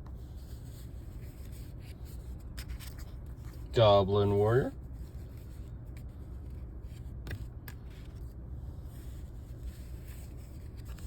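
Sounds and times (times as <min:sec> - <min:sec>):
cards rustling and clicking: 0:00.0 - 0:04.3, 0:05.0 - 0:08.4, 0:09.0 - 0:11.0
low rumble in car cabin: 0:03.3 - 0:07.8.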